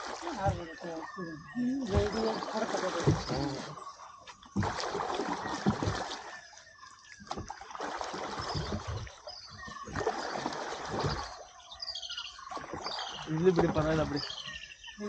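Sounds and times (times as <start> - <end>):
oars splashing through water: 0.0 - 15.0.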